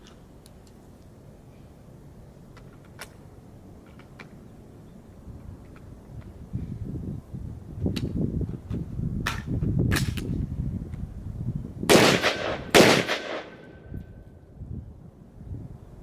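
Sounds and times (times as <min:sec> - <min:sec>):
loud gunshots with echo: 0:11.9 - 0:13.8.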